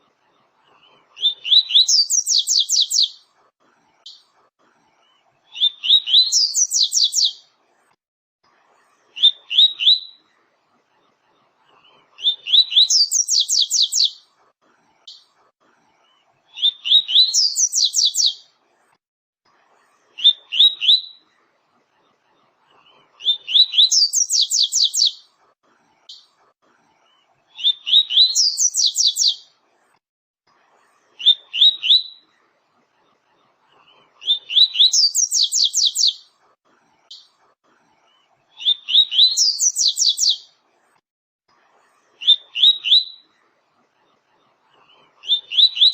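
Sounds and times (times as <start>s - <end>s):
bird singing: 1.2s - 3.2s, 5.6s - 7.4s, 12.2s - 14.2s, 16.6s - 18.4s, 23.2s - 25.2s, 27.6s - 29.4s, 34.3s - 36.2s, 38.6s - 40.4s.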